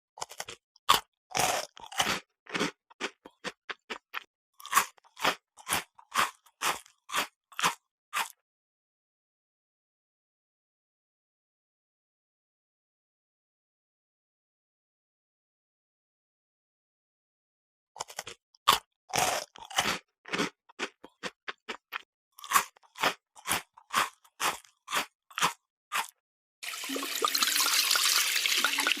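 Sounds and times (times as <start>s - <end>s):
person chewing crunchy food: 0.2s - 8.4s, 18.0s - 26.2s.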